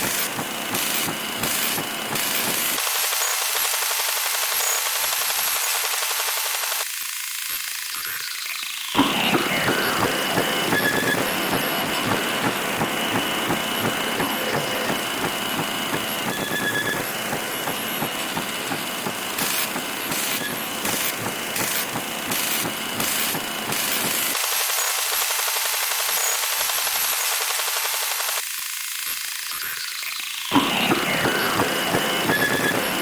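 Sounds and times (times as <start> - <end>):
television static: 9.0 - 22.0.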